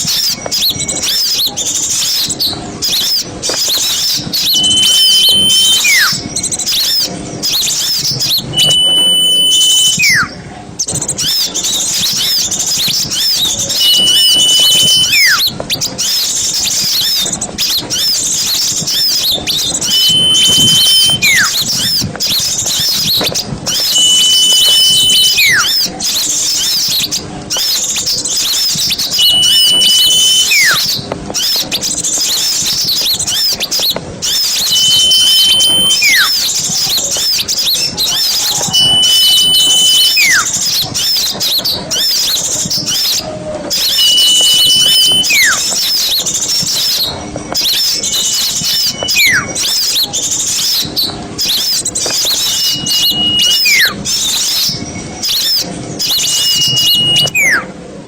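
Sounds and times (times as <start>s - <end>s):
songbirds chattering: 0.0s - 57.6s
bird whistle sliding down: 2.9s - 7.0s, 7.6s - 10.3s, 13.0s - 15.5s, 18.8s - 25.9s, 28.4s - 31.6s, 32.7s - 57.7s.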